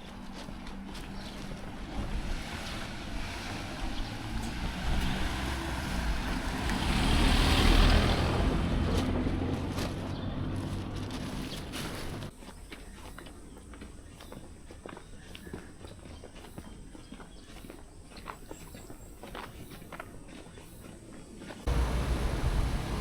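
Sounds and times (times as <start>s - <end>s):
sea surf washing in: 21.7s - 23.0s.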